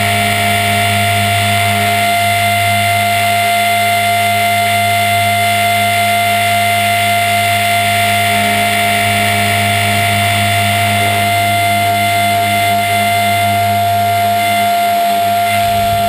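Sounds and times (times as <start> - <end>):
rc helicopter motor whine: 0.0 - 16.0.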